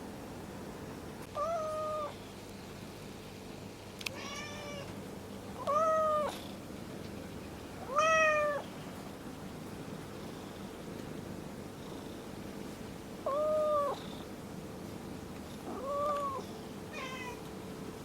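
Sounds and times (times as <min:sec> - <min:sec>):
cat meowing: 0:01.3 - 0:02.1, 0:04.1 - 0:04.9, 0:05.6 - 0:06.3, 0:07.8 - 0:08.6, 0:13.3 - 0:14.0, 0:15.7 - 0:17.4.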